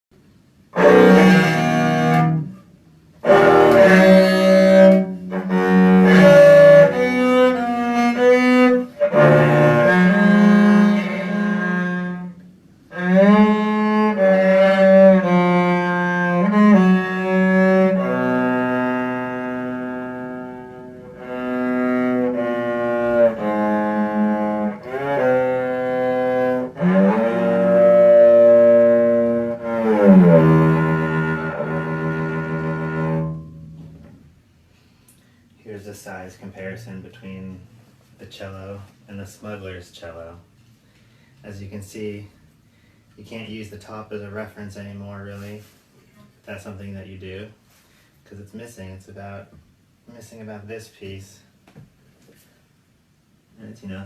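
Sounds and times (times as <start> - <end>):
cello bowed sustained notes: 0.8 - 34.2.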